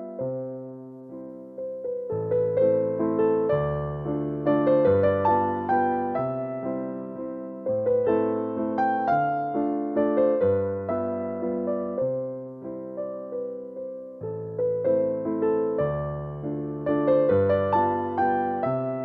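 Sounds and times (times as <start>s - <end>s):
soft piano music: 0.0s - 19.0s.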